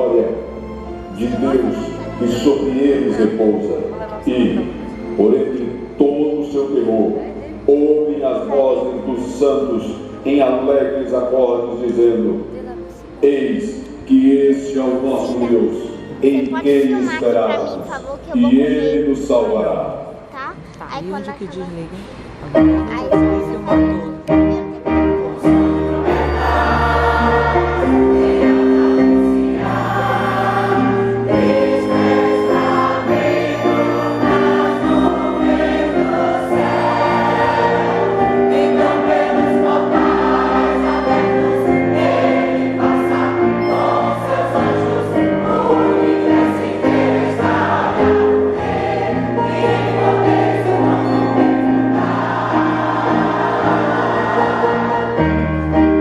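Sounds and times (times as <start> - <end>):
instrumental accompaniment: 0.0 - 7.7, 22.4 - 56.0
choir singing in harmony: 0.0 - 12.2, 13.2 - 17.8, 18.4 - 19.8, 24.9 - 56.0.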